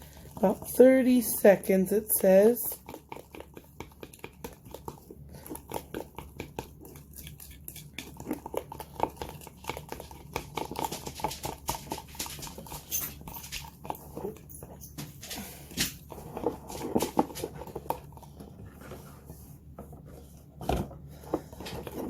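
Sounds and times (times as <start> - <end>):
spoon clinking and scraping a mug: 12.5 - 15.2.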